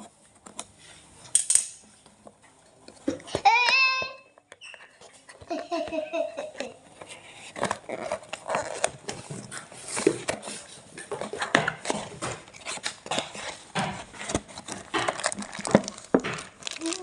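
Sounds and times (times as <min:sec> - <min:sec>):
package being opened by hand: 0:06.4 - 0:17.0.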